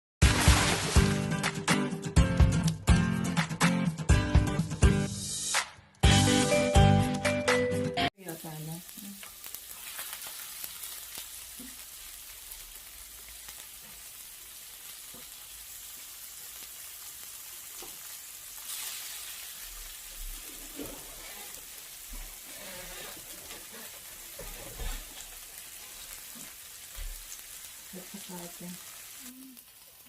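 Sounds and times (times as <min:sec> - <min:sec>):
burst of music: 0:00.2 - 0:03.8
meat sizzling on grill plate: 0:08.2 - 0:30.0.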